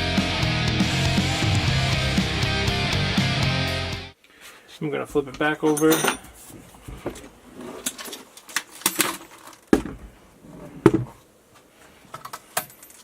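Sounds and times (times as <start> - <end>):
toy truck being handled: 7.7 - 9.8.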